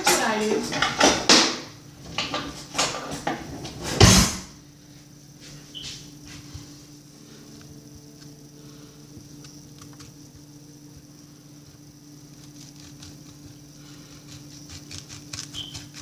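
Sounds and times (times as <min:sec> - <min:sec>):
kitchen clattering and knocking: 0:00.0 - 0:04.5
faint steady hum: 0:00.0 - 0:16.0
cupboard door shutting thump: 0:03.9 - 0:04.5.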